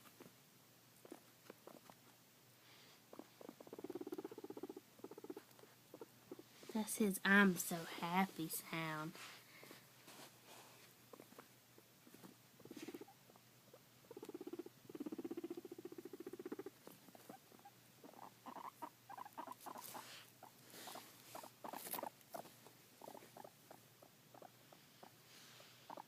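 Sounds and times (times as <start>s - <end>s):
guinea pig buzzing: 1.0s - 2.2s, 3.1s - 9.0s, 11.0s - 25.2s
guinea pig chirping: 1.0s - 2.2s, 3.1s - 7.4s, 11.0s - 25.2s.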